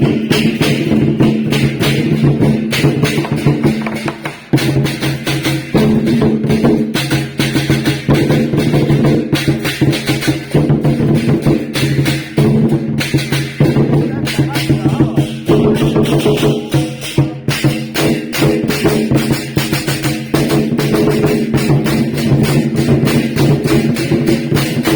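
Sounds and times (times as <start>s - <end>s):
drum and wood-block percussion: 0.0s - 24.9s.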